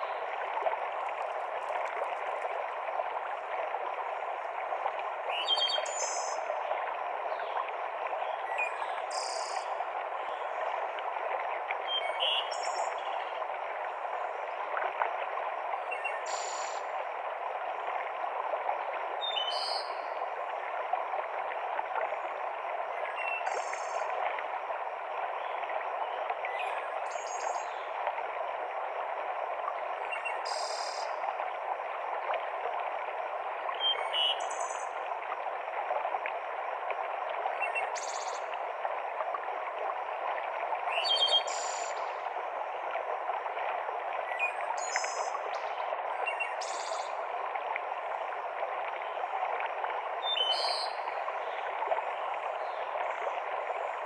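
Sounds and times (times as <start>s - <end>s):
stream cascading over rocks: 0.0s - 12.2s.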